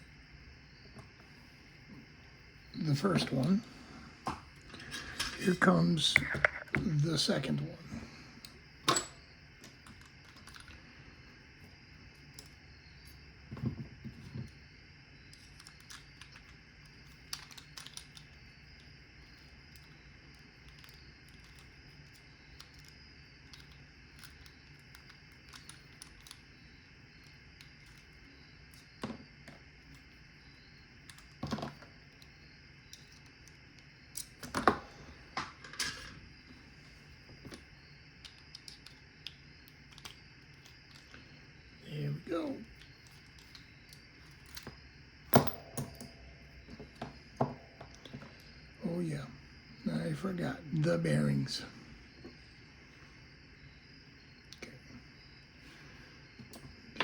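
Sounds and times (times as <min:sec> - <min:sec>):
small metal parts clicking: 0:08.4 - 0:10.8, 0:15.3 - 0:26.4, 0:38.2 - 0:41.2, 0:42.6 - 0:46.2.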